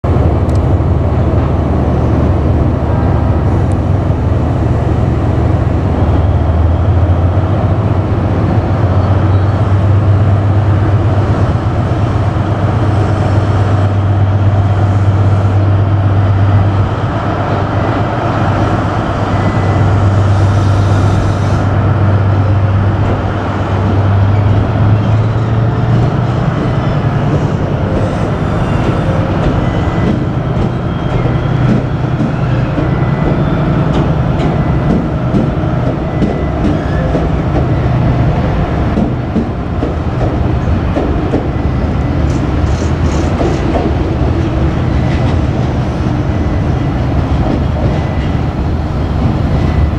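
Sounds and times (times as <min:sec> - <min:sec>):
diesel locomotive engine drone: 0:00.0 - 0:49.9
rail noise: 0:00.0 - 0:49.9.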